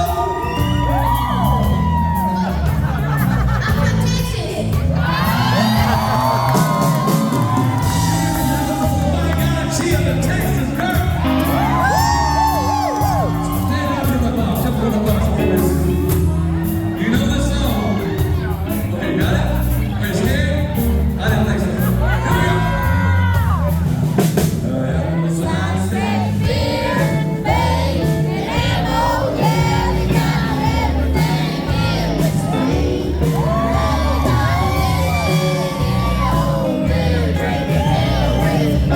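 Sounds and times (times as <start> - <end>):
crowd shouting and whooping: 0.0 - 20.5, 21.3 - 24.3, 25.2 - 38.9
live country band with singing: 0.0 - 38.9
person singing: 24.5 - 38.9.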